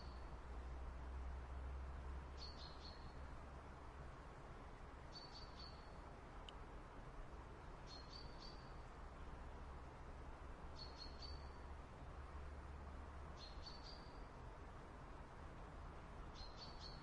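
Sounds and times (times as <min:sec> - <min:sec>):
faint high bird chirps: 0:00.0 - 0:00.3, 0:02.4 - 0:03.2, 0:05.1 - 0:06.0, 0:07.9 - 0:08.8, 0:10.8 - 0:11.7, 0:13.4 - 0:14.3, 0:16.4 - 0:17.0.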